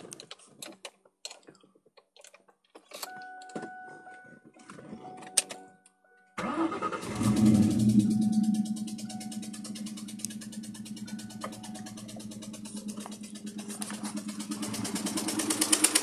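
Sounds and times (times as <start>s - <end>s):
keys rattling and clicking: 0.0s - 3.7s, 9.4s - 14.5s
car engine cranking and starting: 6.4s - 16.0s
electronic warning tone: 7.1s - 14.2s.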